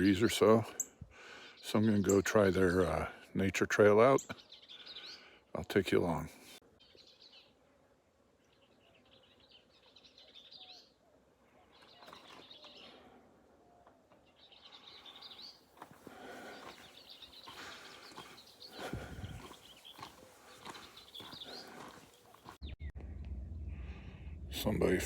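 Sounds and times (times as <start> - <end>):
small birds chirping: 0.0 - 7.6, 8.3 - 23.0
low rumble: 22.6 - 25.0.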